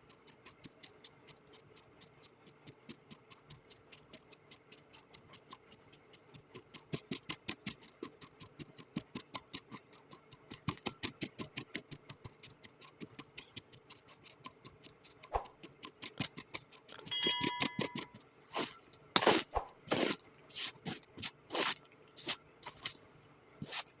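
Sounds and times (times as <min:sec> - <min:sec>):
short ringing tone: 0:17.1 - 0:18.2
kinetic sand crunching: 0:18.5 - 0:23.0, 0:23.6 - 0:23.9.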